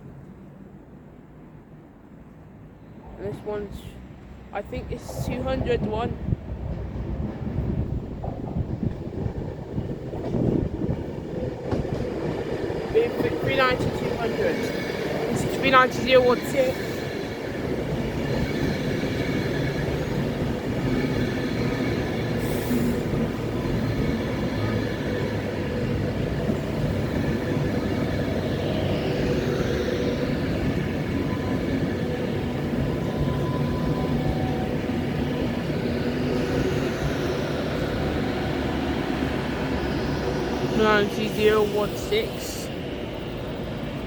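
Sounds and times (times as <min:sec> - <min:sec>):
train rumbling slowly: 0:00.0 - 0:44.0.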